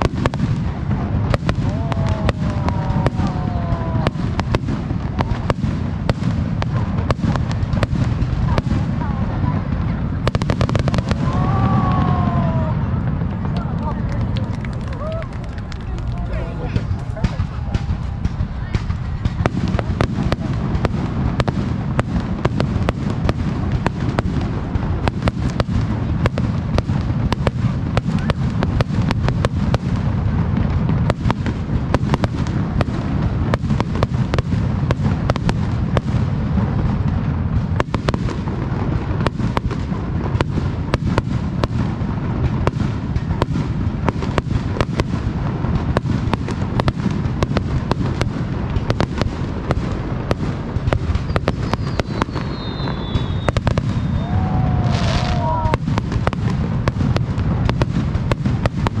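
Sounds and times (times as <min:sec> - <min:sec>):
low rumble of booms: 0:00.0 - 0:59.0
firework shells cracking: 0:10.5 - 0:30.2.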